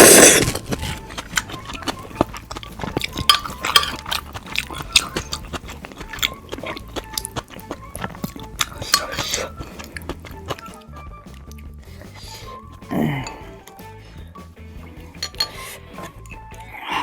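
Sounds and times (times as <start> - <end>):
utensils clinking: 0.0 - 10.7, 15.1 - 16.3
mouth clicks: 0.0 - 13.9
slurping soup: 0.0 - 14.0, 14.6 - 17.0
wet chewing: 0.0 - 14.0.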